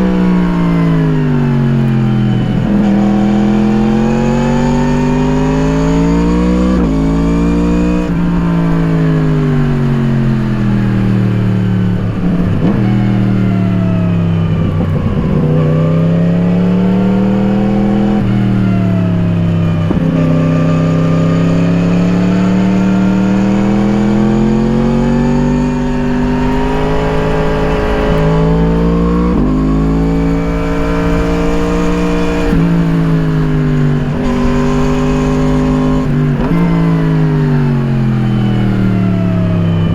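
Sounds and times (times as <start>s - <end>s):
motorcycle engine revving: 0.0s - 39.9s
low rumble: 21.4s - 39.3s.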